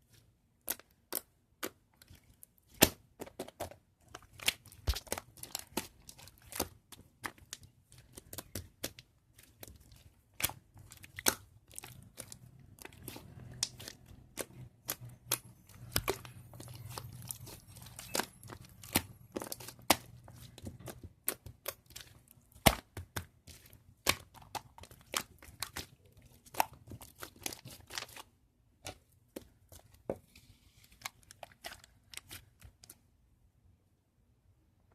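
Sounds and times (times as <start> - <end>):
slime popping and crackling: 0.6 - 28.2.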